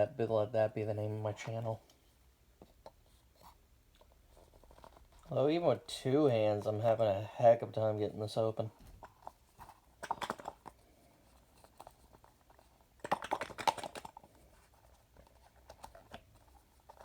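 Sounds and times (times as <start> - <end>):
small box clicking and rattling: 3.9 - 5.3, 8.8 - 17.0.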